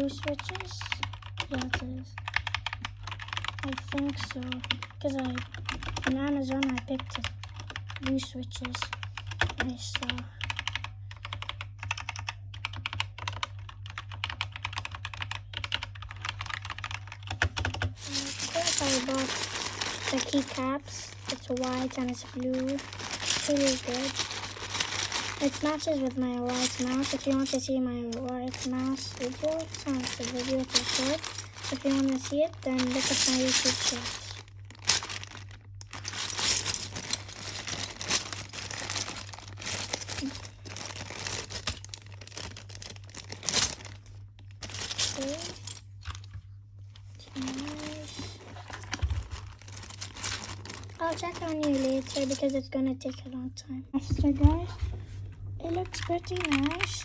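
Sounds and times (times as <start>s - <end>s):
steady low hum: 0.0s - 57.0s
mechanical keyboard typing: 0.2s - 34.3s, 55.7s - 57.0s
plastic packaging crinkling: 15.9s - 52.7s, 54.2s - 57.0s.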